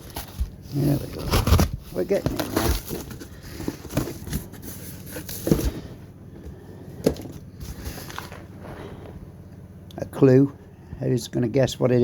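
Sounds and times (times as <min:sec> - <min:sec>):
cardboard packaging rustling and scraping: 0:00.0 - 0:09.1.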